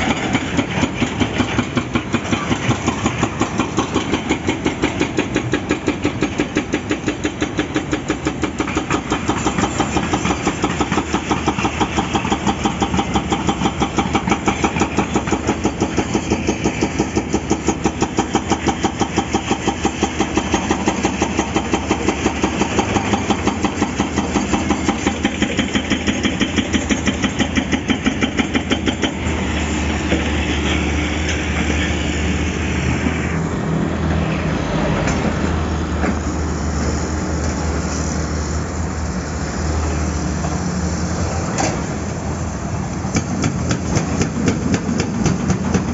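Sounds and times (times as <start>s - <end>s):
hydraulic breaker hammer pounding: 0.0s - 31.9s, 43.0s - 45.9s.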